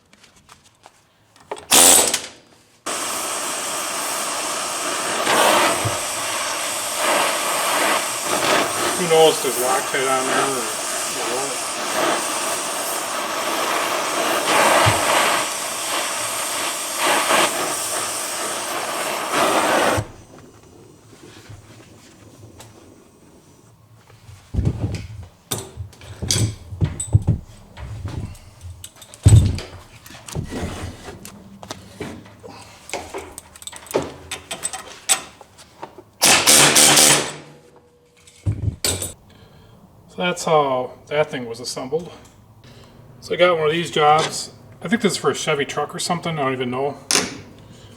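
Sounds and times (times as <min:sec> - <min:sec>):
loud harsh burst: 0:02.9 - 0:20.3, 0:36.2 - 0:37.3
power tool hissing rush: 0:02.9 - 0:20.4.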